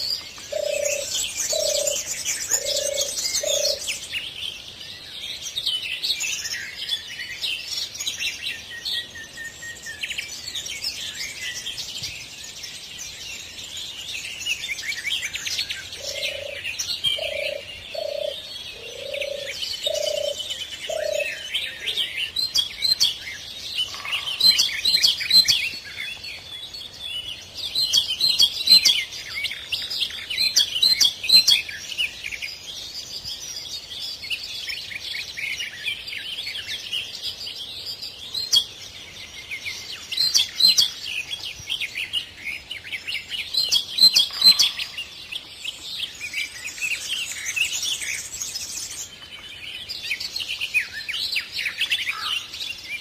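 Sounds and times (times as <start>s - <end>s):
small birds chirping: 0.0s - 53.0s
dove cooing: 0.5s - 4.0s, 16.0s - 16.6s, 17.2s - 22.0s.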